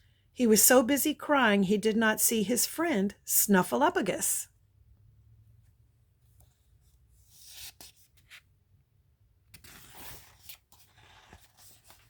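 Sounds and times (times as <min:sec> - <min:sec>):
book page turning: 0:07.3 - 0:08.5, 0:09.5 - 0:12.0.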